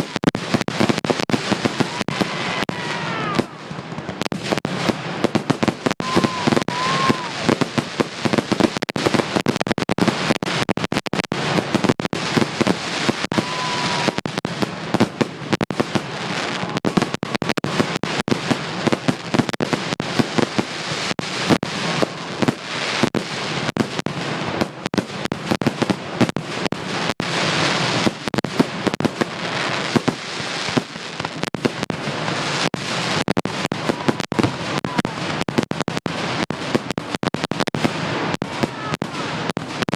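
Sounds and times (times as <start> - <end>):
firework whistles: 0.0 - 24.0
fireworks bangs and crackling: 0.0 - 39.9.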